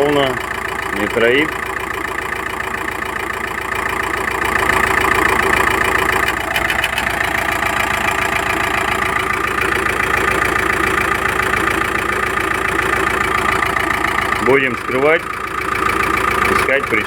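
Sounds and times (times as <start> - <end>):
engine idling with rhythmic knock: 0.0 - 17.0.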